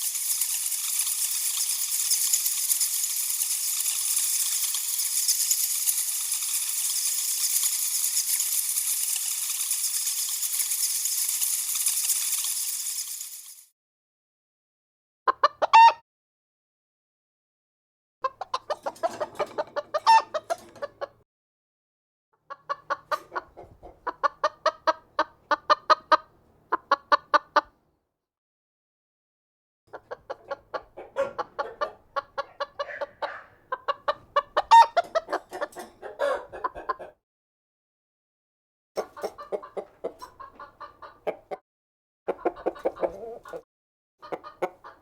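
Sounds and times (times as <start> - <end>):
chicken clucking: 15.3 - 16.0, 18.2 - 21.2, 22.4 - 27.8, 29.9 - 37.2, 39.0 - 41.6, 42.3 - 43.6, 44.2 - 45.0.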